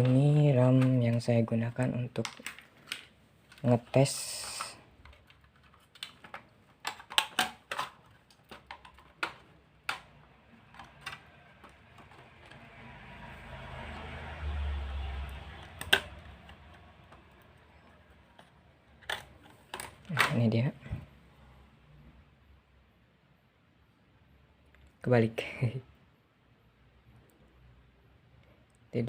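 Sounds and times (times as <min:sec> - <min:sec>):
hardware clicking and tapping: 0:02.1 - 0:12.9, 0:15.1 - 0:21.0.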